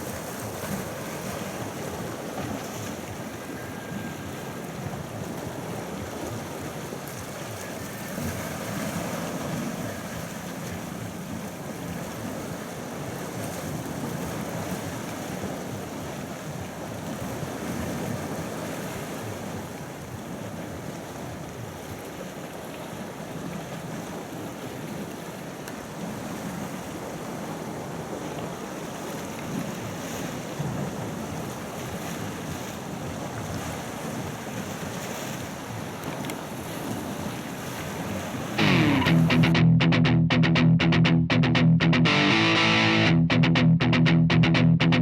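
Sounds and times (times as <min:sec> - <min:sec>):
sea waves washing: 0:05.6 - 0:14.5.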